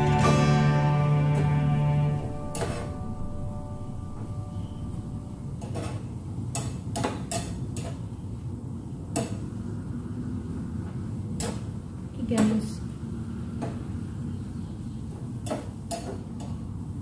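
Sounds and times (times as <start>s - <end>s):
steady low hum: 0.0s - 7.0s.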